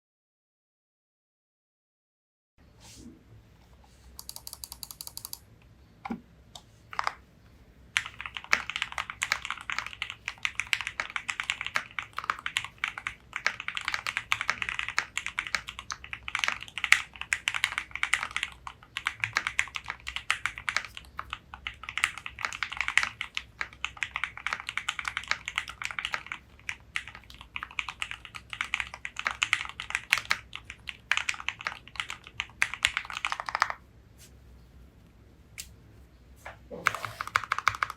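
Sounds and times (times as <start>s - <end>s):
typing on mechanical keyboard: 4.2s - 5.4s, 8.0s - 33.8s, 36.8s - 37.9s.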